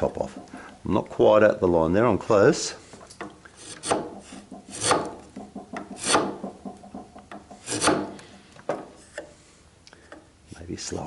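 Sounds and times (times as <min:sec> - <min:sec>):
chisel scraping wood: 0:03.5 - 0:09.4.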